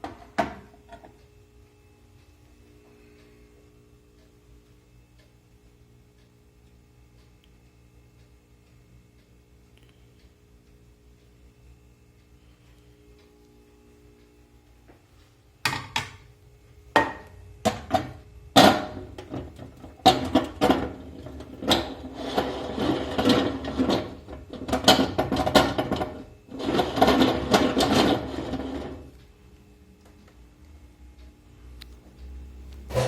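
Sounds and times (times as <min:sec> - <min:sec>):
microwave turntable plate rattling: 0:17.0 - 0:29.2.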